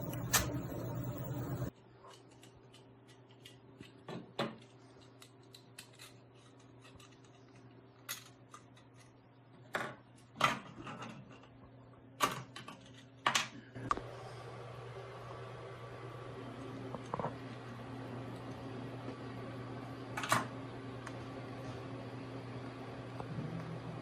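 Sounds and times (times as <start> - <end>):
low hum: 0.0 - 1.7.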